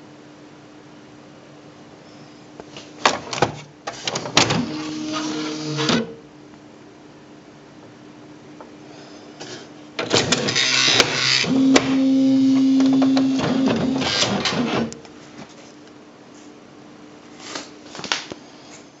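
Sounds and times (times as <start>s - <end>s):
typewriter mechanism clatter: 10.0s - 12.0s, 12.6s - 15.0s
motor whine: 10.3s - 15.0s.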